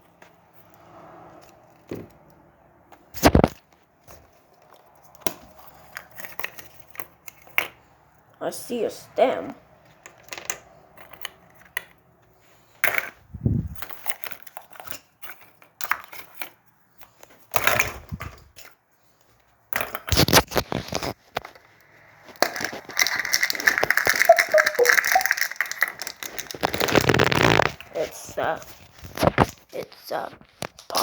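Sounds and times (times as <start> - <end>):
plastic wrapper crinkling: 20.0 - 31.0.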